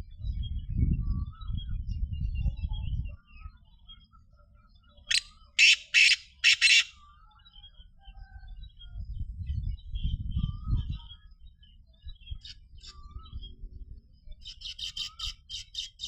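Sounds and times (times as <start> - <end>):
small birds chirping: 4.8 - 7.0
harsh grating bird call: 5.1 - 6.9.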